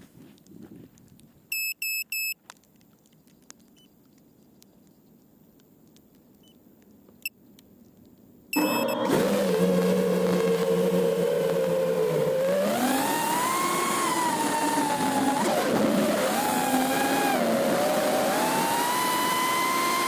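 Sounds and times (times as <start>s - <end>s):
quadcopter short high beeps: 1.5s - 2.4s, 8.5s - 9.1s
electric motors whining: 8.6s - 20.0s.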